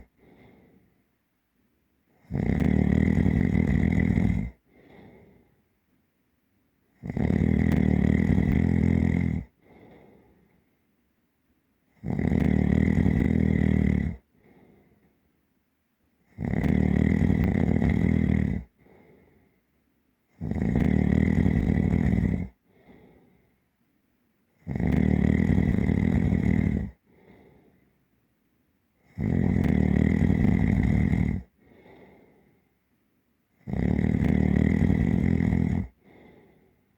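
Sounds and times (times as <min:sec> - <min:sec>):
deep heavy snoring: 0:00.0 - 0:00.8, 0:02.2 - 0:05.4, 0:07.0 - 0:10.4, 0:12.0 - 0:14.6, 0:16.3 - 0:19.2, 0:20.4 - 0:23.3, 0:24.6 - 0:27.6, 0:29.1 - 0:32.4, 0:33.6 - 0:36.7
quiet breath out: 0:00.0 - 0:01.1, 0:04.4 - 0:05.7, 0:09.4 - 0:10.9, 0:14.1 - 0:15.3, 0:18.6 - 0:19.8, 0:22.4 - 0:23.7, 0:26.8 - 0:28.0, 0:31.4 - 0:32.8, 0:35.8 - 0:36.9.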